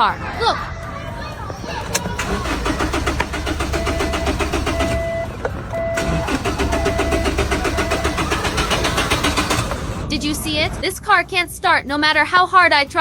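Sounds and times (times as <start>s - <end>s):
car starter cranking engine: 1.7s - 10.4s
beeping tone: 3.3s - 8.3s.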